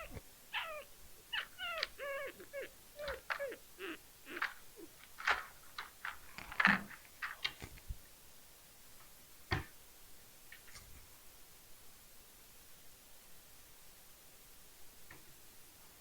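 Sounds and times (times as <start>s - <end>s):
plastic pieces clicking: 4.4s - 7.6s.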